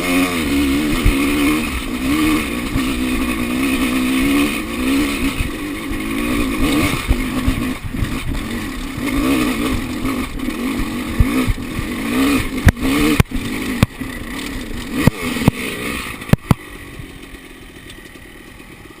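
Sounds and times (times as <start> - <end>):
dirt bike engine revving: 0.0 - 19.0
sharp knocks and clatters: 16.3 - 16.6.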